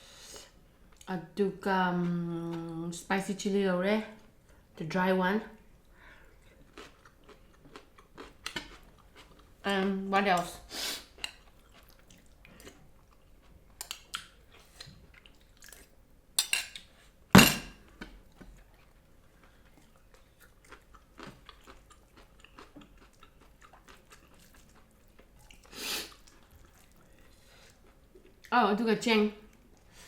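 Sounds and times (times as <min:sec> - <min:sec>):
chewing with clicks and crunches: 0:05.6 - 0:10.5, 0:11.2 - 0:16.0, 0:17.9 - 0:28.6, 0:29.4 - 0:30.0.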